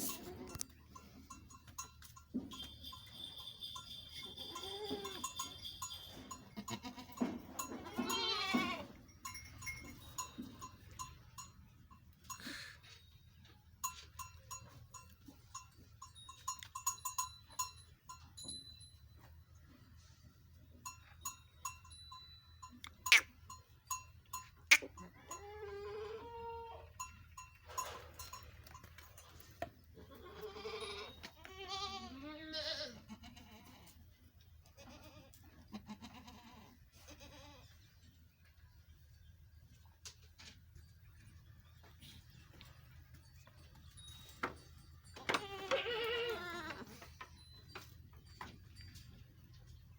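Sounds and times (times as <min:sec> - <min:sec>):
goats bleating: 0:06.6 - 0:07.2, 0:07.8 - 0:08.9, 0:30.0 - 0:33.9, 0:34.8 - 0:37.6, 0:45.3 - 0:46.9.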